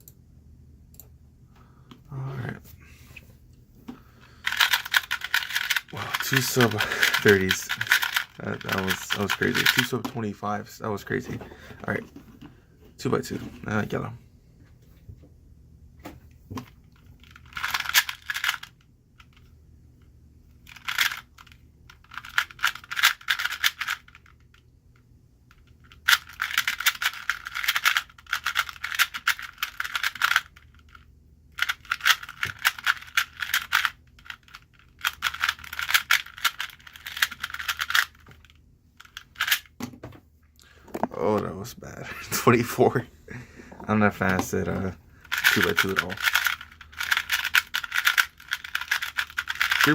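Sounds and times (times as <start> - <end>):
puzzle cube clicking: 4.4 - 9.9, 31.6 - 38.2, 39.0 - 39.7, 45.3 - 49.9.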